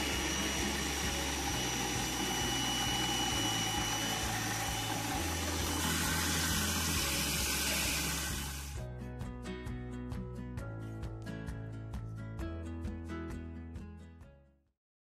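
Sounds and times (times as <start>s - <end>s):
small electric motor whining: 0.0s - 8.8s.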